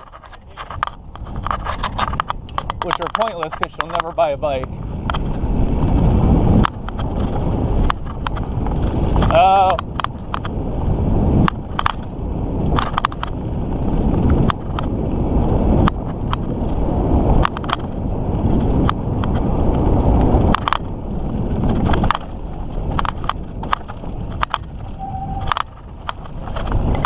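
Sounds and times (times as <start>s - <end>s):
bike rattles and clicks: 0.0s - 27.0s
wind and tyre rumble: 0.0s - 27.0s
short squeak: 24.9s - 25.5s.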